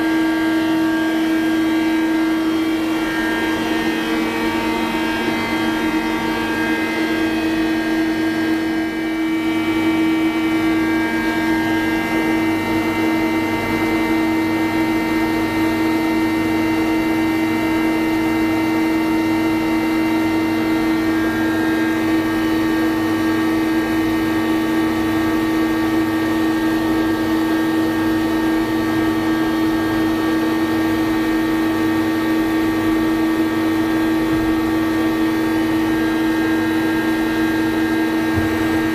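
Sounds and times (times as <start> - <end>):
lathe whine: 0.0 - 38.9.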